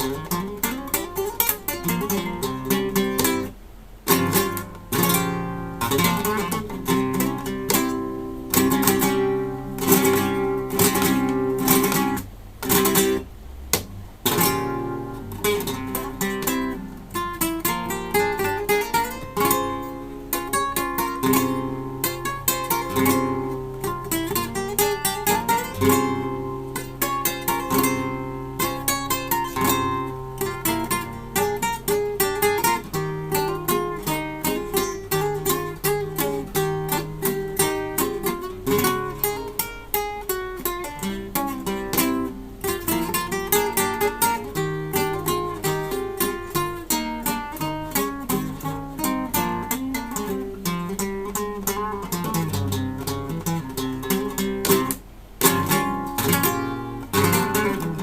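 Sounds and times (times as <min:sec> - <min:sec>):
fingerstyle acoustic guitar: 0:00.0 - 0:58.0.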